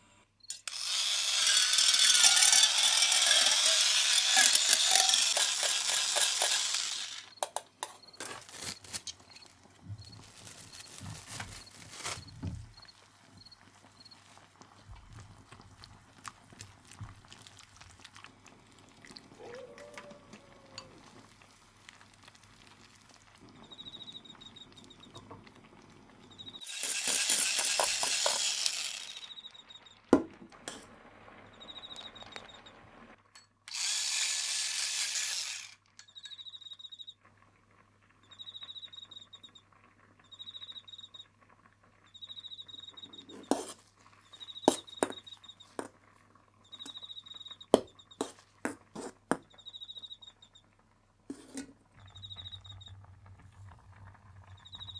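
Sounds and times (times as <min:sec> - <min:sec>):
utensils clinking and knocking: 0:00.5 - 0:08.7, 0:26.6 - 0:29.2, 0:43.2 - 0:43.8, 0:44.7 - 0:45.2.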